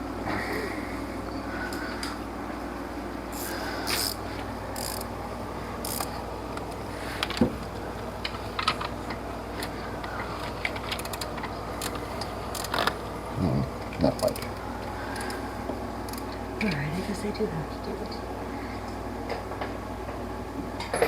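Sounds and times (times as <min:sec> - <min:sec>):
socket ratchet clicking: 0:03.4 - 0:04.2, 0:04.8 - 0:05.1, 0:05.8 - 0:06.1.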